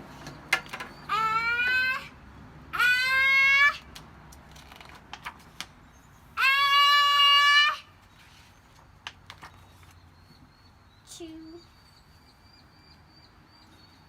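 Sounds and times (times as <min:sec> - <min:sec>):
girl wailing: 0:01.1 - 0:03.9, 0:06.4 - 0:07.9.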